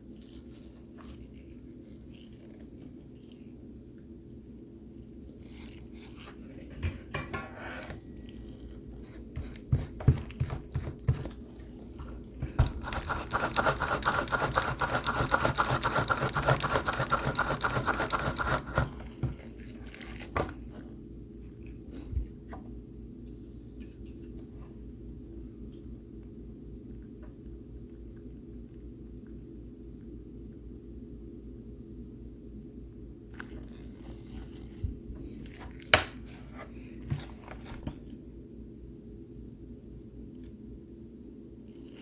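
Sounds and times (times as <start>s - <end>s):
steady low hum: 0.0s - 42.0s
rapid scraping strokes: 12.6s - 19.0s.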